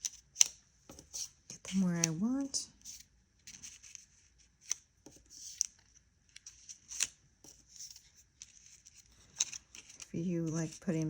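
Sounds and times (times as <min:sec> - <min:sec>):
paper rustling: 0:02.8 - 0:11.0.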